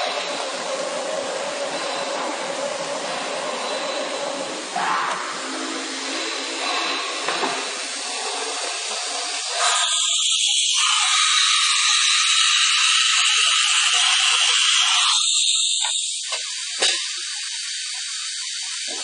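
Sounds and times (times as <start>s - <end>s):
cnc router hissing: 0.0s - 19.0s.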